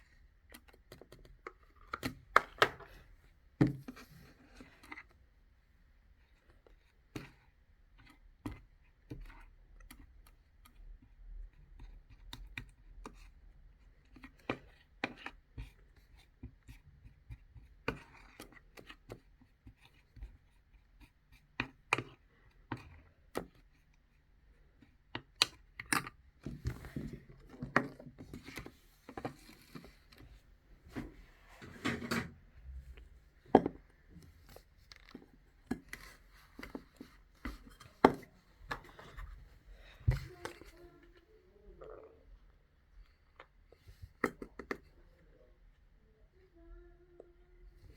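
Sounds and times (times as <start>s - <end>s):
scraping and rustling: 26.5s - 41.0s.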